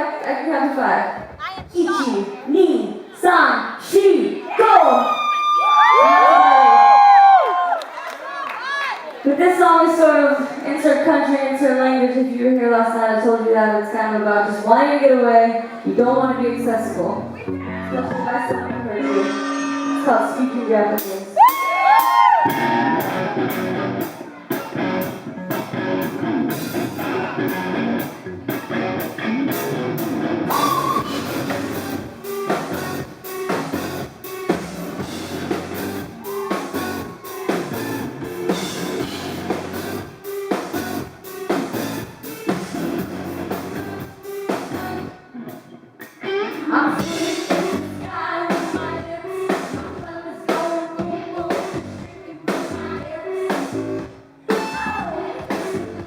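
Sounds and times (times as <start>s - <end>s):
person singing: 17.5s - 21.4s, 43.6s - 53.8s
drum kit beat: 19.0s - 56.0s
guitars: 22.4s - 49.9s.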